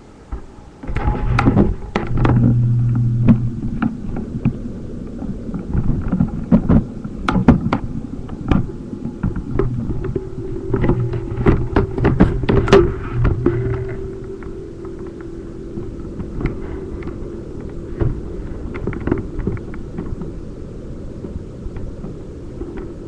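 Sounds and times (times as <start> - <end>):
low hum: 0.0 - 23.0
handling knocks and bumps: 5.8 - 15.2.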